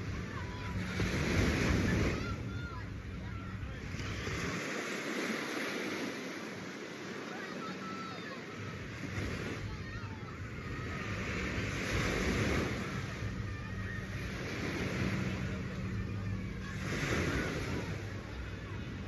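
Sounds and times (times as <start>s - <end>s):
waves washing onto a beach: 0.0s - 19.0s
low engine hum: 9.8s - 19.0s.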